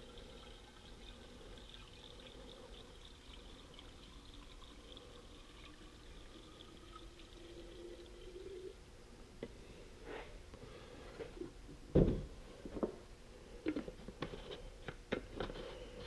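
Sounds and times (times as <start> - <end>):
fuel trickling into tank: 0.0 - 8.8.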